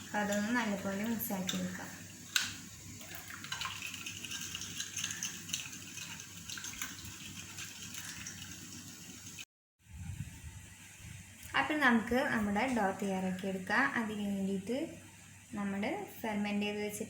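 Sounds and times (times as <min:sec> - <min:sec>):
spoon stirring liquid in bowl: 0:00.0 - 0:02.5, 0:03.1 - 0:08.9.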